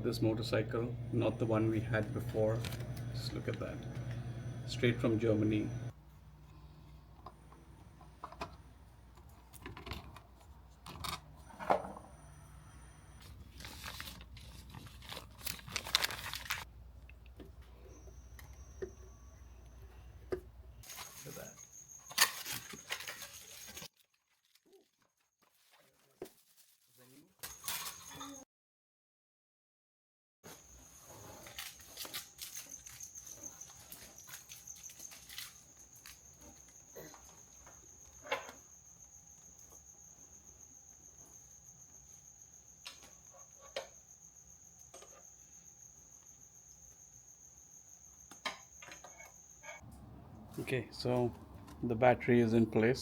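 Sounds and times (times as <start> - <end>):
wrapping rustling and tearing: 13.2 - 16.7, 22.1 - 27.8, 31.4 - 36.2.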